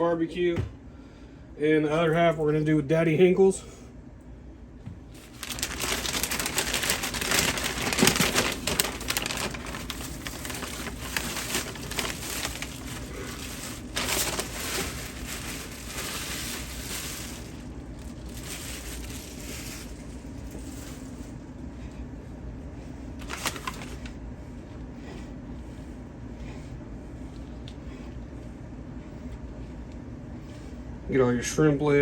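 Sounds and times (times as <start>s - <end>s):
packaging rustling and crinkling: 5.1s - 21.4s, 23.2s - 24.1s.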